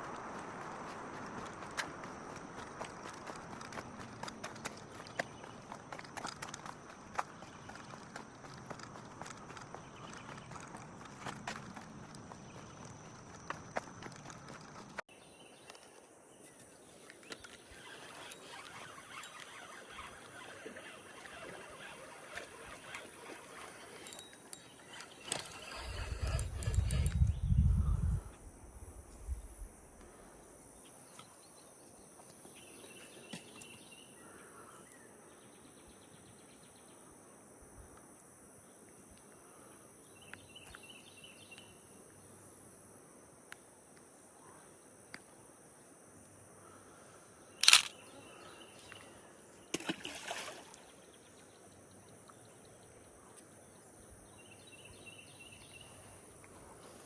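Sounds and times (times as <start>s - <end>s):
high insect drone: 16.8s - 57.0s
low rumble on microphone: 25.8s - 28.5s.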